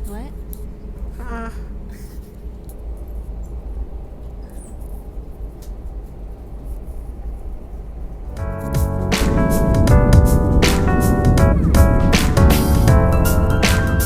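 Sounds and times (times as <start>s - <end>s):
keyboard music: 8.4s - 14.0s
vehicle running rumble: 8.4s - 14.0s.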